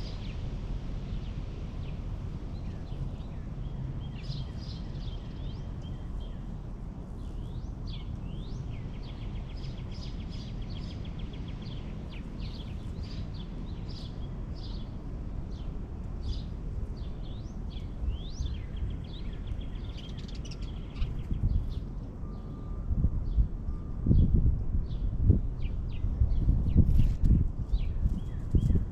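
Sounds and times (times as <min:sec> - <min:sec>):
small songbirds chirping: 0:00.0 - 0:28.9
steady low rumble: 0:00.0 - 0:28.9.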